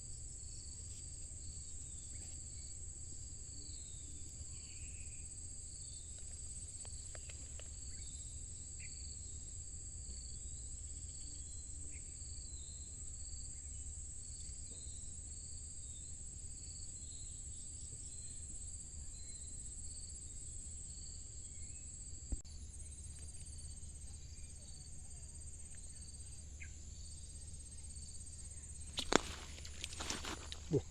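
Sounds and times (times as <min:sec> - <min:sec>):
insect continuous high trill: 0:00.0 - 0:30.9.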